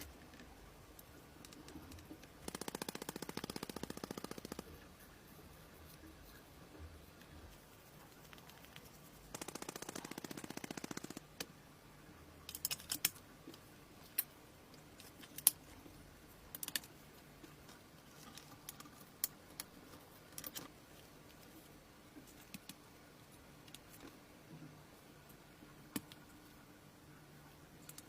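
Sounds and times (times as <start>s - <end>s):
rapid mechanical rattle: 9.3s - 11.4s.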